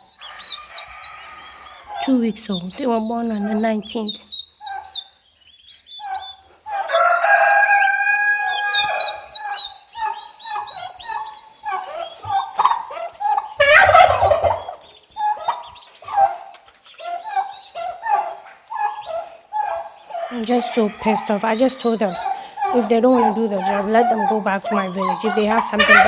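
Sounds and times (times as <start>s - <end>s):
chickens clucking: 0.0s - 26.0s
rooster crowing: 0.1s - 2.1s, 6.2s - 9.7s, 13.6s - 14.8s, 19.0s - 26.0s.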